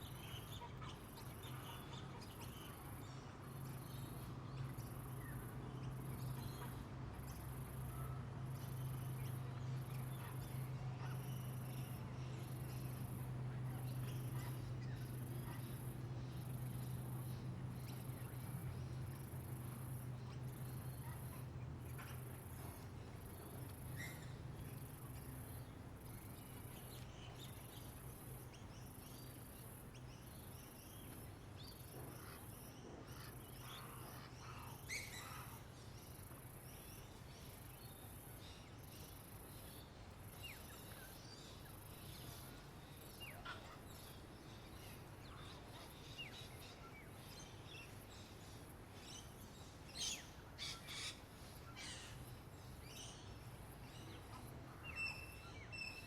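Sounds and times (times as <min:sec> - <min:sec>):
bird chirps: 0:07.9 - 0:29.4.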